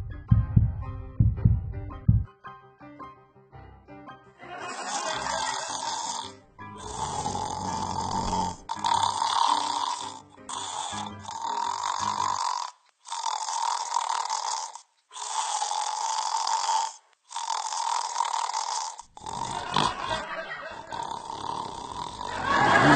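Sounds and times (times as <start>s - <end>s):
rough deep sound: 0.0s - 2.3s
loud snores: 4.6s - 22.9s.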